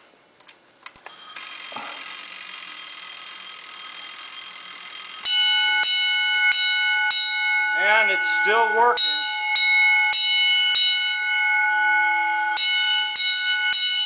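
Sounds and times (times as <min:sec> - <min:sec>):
faint steady bell ringing: 0:01.1 - 0:14.0
loud single-stroke bell striking: 0:05.0 - 0:14.0.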